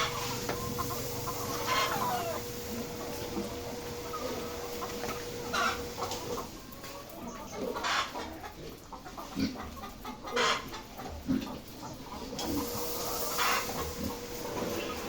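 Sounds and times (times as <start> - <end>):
hens clucking: 0.0 - 15.0.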